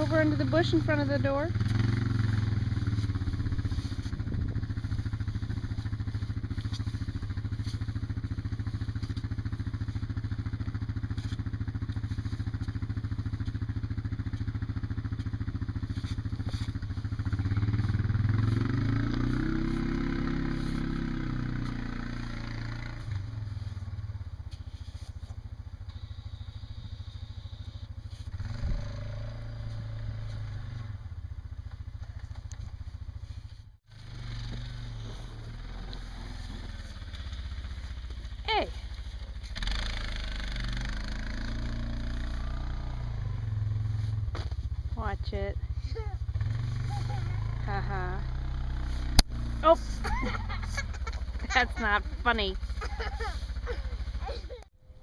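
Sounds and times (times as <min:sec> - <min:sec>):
engine running: 0:00.0 - 0:55.0.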